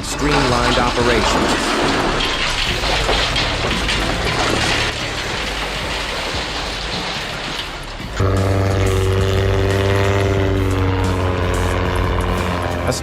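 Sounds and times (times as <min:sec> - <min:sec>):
machinery clatter and rumble: 0:00.0 - 0:13.0
steady engine drone: 0:08.1 - 0:13.0.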